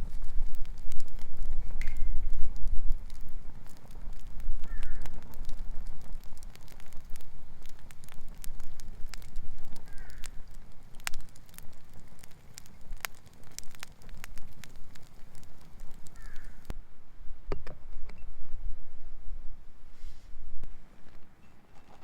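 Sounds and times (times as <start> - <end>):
wood fire crackling and popping: 0.0 - 16.8.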